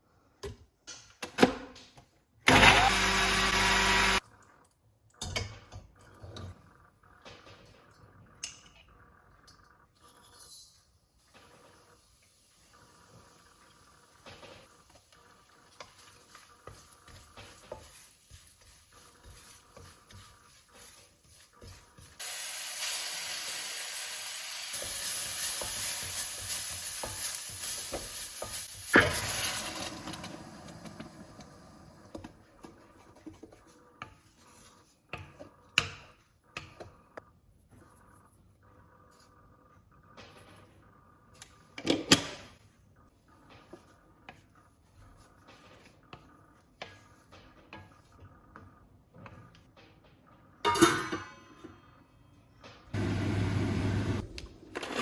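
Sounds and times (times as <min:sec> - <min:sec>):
spoon stirring in pan: 0:14.6 - 0:22.4, 0:24.7 - 0:29.4
food sizzling in hot oil: 0:22.2 - 0:31.3.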